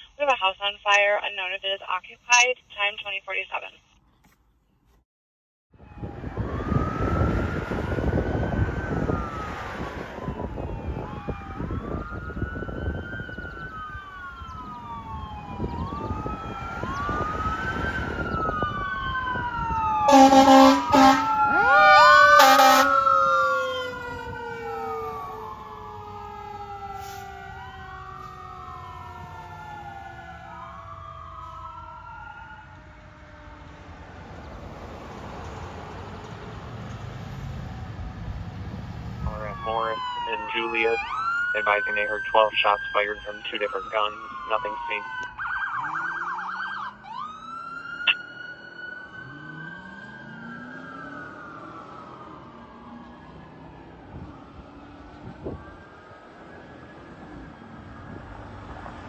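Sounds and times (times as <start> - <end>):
fire truck siren wailing: 5.7 - 59.0
air horn blasts: 20.1 - 21.3, 22.4 - 23.0.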